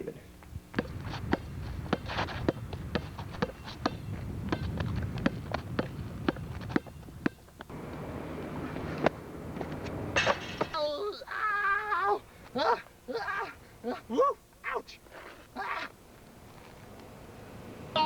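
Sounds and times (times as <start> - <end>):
sharp thumps: 0.7 - 10.8.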